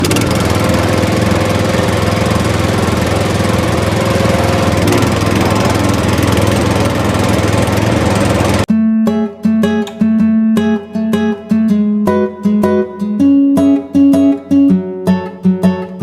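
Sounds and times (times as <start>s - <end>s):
engine running steadily: 0.0s - 8.7s
strummed acoustic guitar music: 0.0s - 16.0s.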